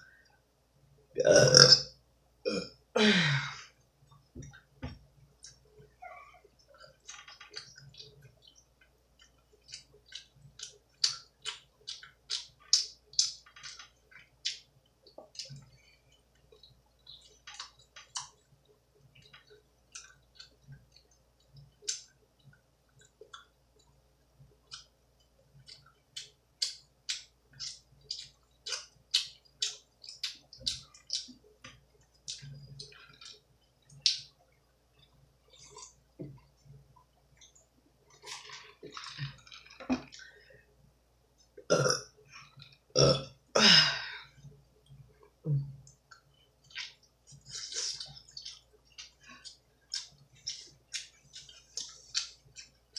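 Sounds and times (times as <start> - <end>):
open-mouth chewing: 24.7 - 31.4, 34.9 - 36.5, 37.4 - 40.4, 45.2 - 52.9.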